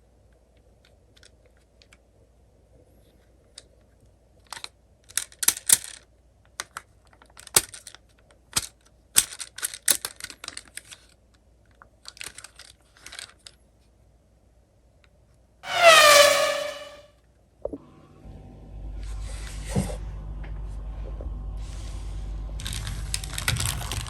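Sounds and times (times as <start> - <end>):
toy cars clicking together: 0.8 - 2.0, 4.4 - 13.6, 22.6 - 24.0.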